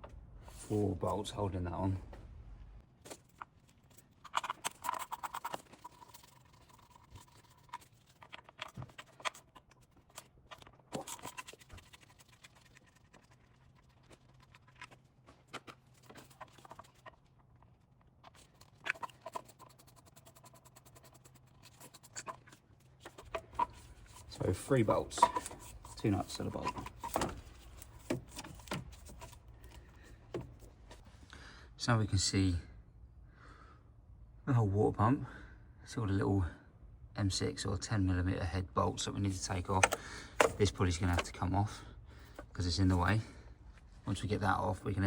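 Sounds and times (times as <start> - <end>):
hand tools clicking and scraping: 3.2 - 12.2, 18.2 - 30.7, 39.5 - 41.4.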